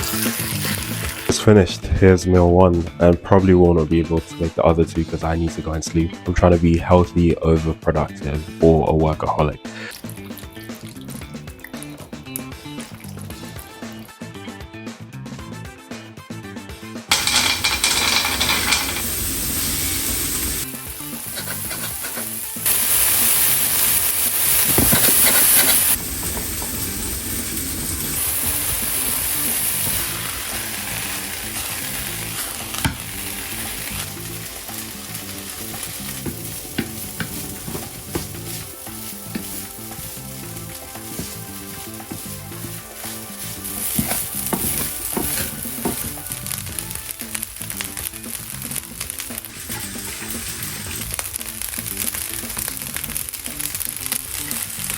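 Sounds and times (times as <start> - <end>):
food sizzling in a pan: 0.0 - 1.3, 17.1 - 54.9
stirring in a pan: 20.4 - 26.9, 28.4 - 47.4.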